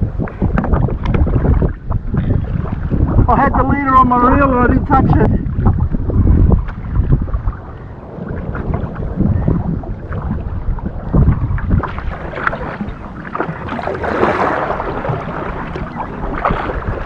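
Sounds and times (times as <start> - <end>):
water sloshing and splashing: 0.0 - 3.6, 4.9 - 17.0
wind buffeting microphone: 0.0 - 17.0
rushing splash: 7.8 - 17.0.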